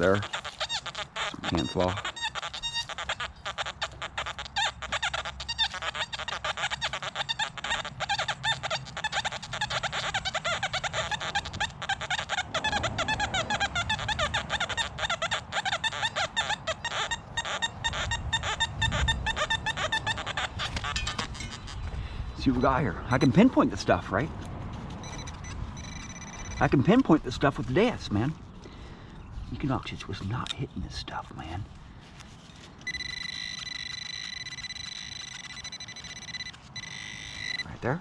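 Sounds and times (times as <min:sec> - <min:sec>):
metal detector beeps and grunts: 0:00.0 - 0:13.6, 0:22.4 - 0:24.2, 0:25.0 - 0:27.2, 0:32.8 - 0:38.0.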